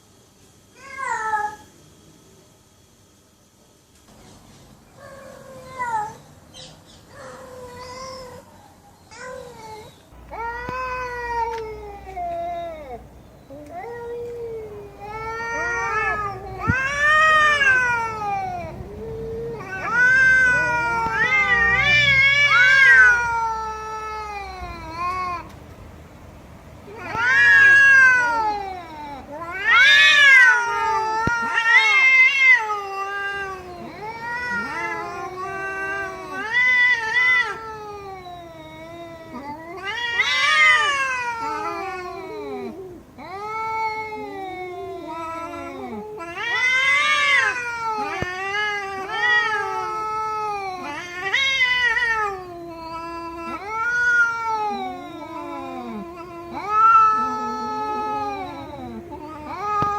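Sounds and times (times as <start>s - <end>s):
cat meowing: 9.1s - 25.6s, 26.9s - 59.9s.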